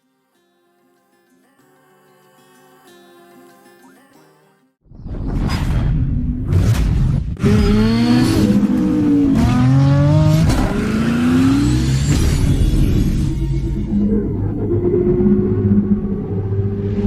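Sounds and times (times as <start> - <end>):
car engine revving: 7.4 - 13.6.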